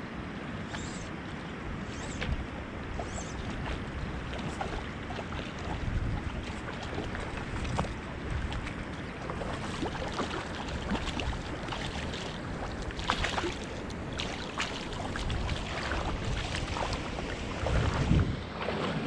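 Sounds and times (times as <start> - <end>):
river water running: 0.0 - 19.0
small splashes and ticks: 0.7 - 18.8.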